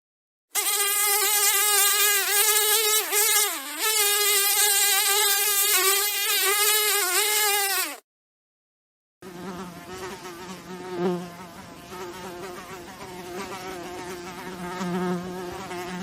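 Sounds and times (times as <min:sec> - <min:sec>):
fly buzzing: 0:00.6 - 0:08.0, 0:09.2 - 0:16.0.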